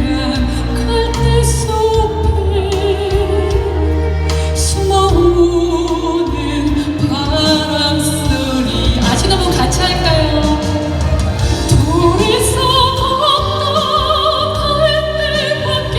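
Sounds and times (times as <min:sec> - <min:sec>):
instrumental accompaniment: 0:00.0 - 0:15.9
soprano singing with vibrato: 0:00.0 - 0:15.9.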